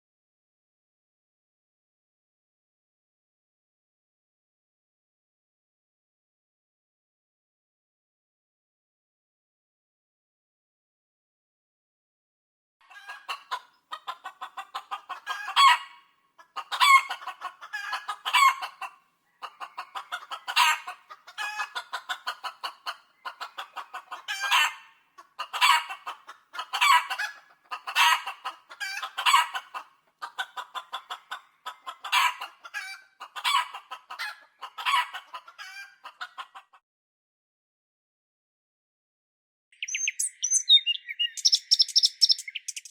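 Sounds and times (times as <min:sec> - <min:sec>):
chickens clucking: 0:12.8 - 0:36.8, 0:39.8 - 0:42.9.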